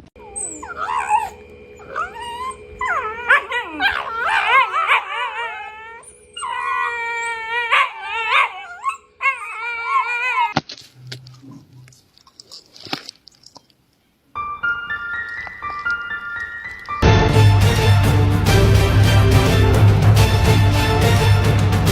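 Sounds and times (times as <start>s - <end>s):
dog howling and whining: 0.1s - 10.6s.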